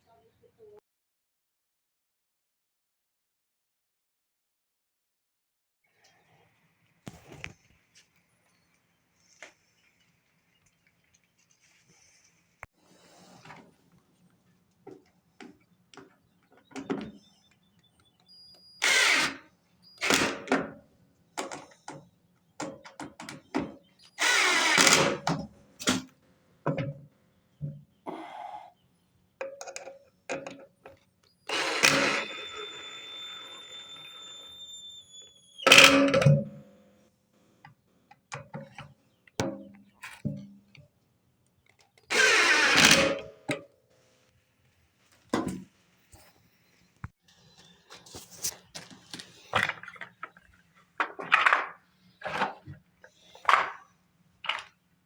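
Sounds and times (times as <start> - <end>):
thin high whine: 31.6 - 35.8.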